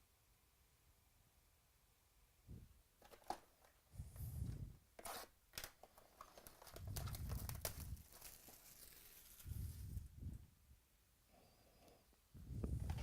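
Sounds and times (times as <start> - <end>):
foil packs crinkling and tearing: 5.6 - 9.7.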